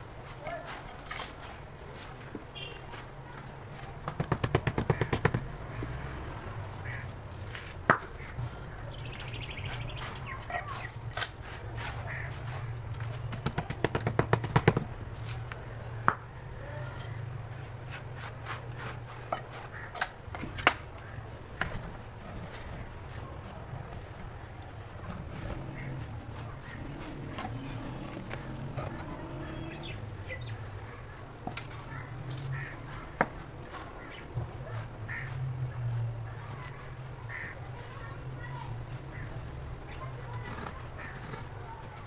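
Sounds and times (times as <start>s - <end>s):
tapping on cement blocks: 3.7s - 5.6s, 7.5s - 8.4s, 10.5s - 15.0s, 16.0s - 16.3s, 19.3s - 21.0s.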